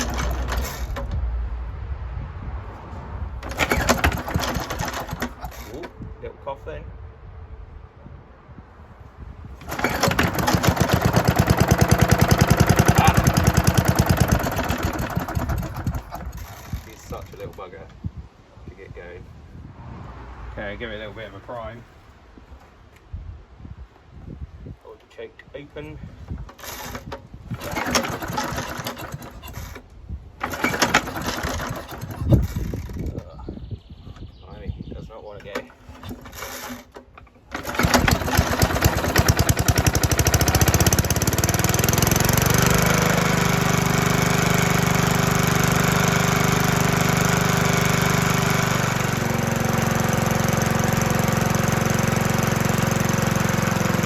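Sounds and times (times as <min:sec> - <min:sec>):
mower engine running unevenly: 0:00.0 - 0:01.2, 0:03.4 - 0:06.0, 0:09.6 - 0:17.6, 0:26.4 - 0:29.8, 0:30.4 - 0:33.2, 0:35.4 - 0:54.0.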